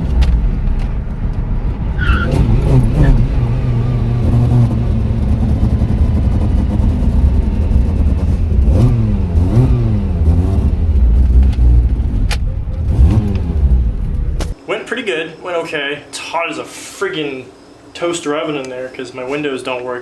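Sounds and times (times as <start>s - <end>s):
car engine revving: 0.0s - 14.6s.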